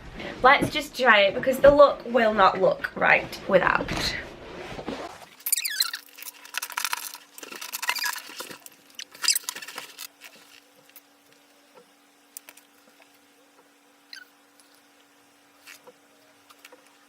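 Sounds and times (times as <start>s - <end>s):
plastic items rustling: 5.1s - 11.7s.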